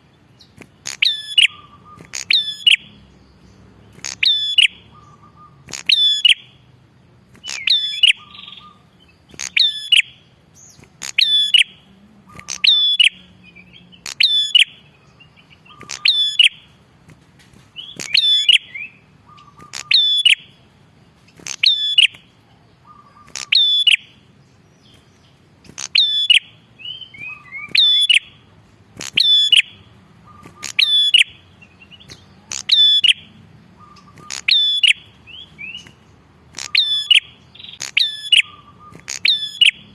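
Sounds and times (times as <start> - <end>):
bird calling sharp phrase: 33.8 - 35.0.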